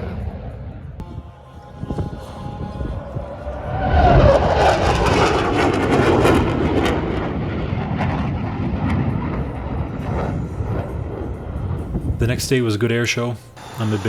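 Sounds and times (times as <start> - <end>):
aircraft passing with rushing noise: 1.6 - 12.2.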